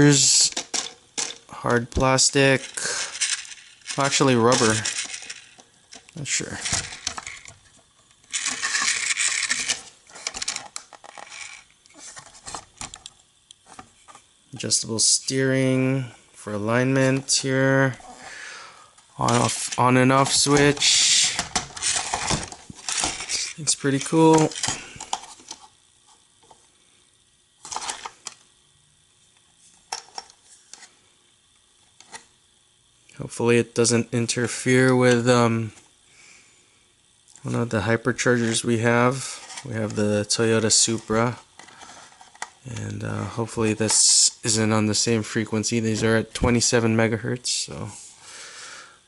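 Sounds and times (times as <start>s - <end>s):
plastic toy car rattling: 2.6s - 7.6s, 8.3s - 12.6s, 19.3s - 25.7s.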